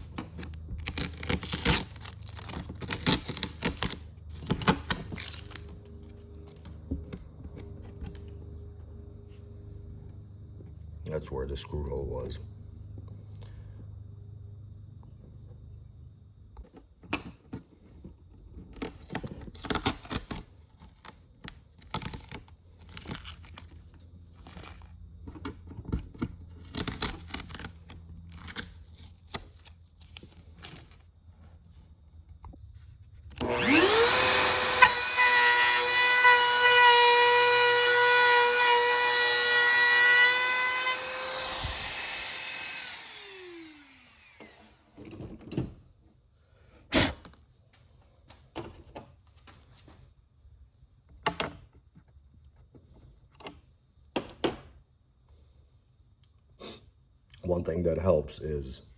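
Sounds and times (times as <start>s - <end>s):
rotary cutting tool whining: 33.3s - 45.2s.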